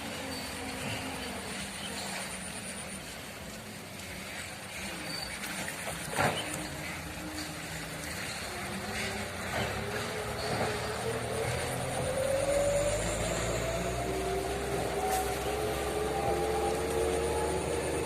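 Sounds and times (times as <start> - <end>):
motor engine droning: 0.0 - 18.0.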